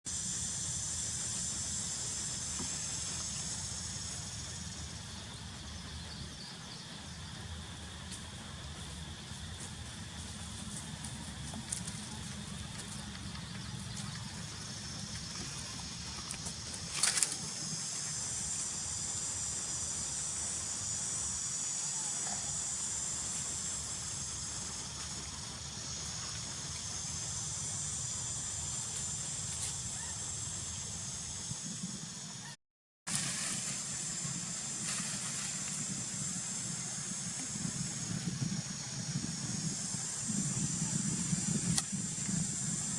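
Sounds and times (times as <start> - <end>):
high wavering hiss: 0.1 - 32.5, 33.1 - 42.9.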